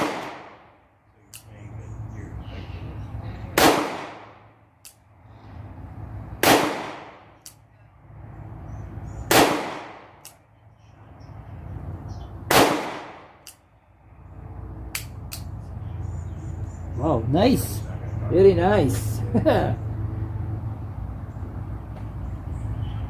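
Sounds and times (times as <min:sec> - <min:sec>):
revolver gunshots: 0:00.0 - 0:00.8, 0:03.5 - 0:04.5, 0:06.4 - 0:07.4, 0:09.3 - 0:10.3, 0:12.5 - 0:13.5.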